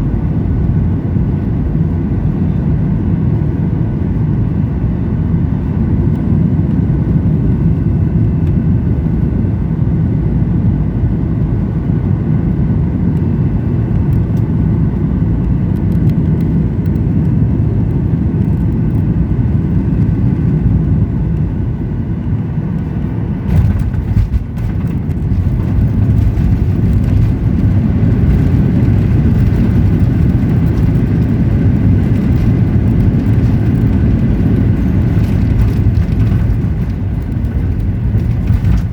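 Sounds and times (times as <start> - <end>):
airplane cabin engine rumble: 0.0 - 38.9
cabin rattling on runway: 22.8 - 38.9.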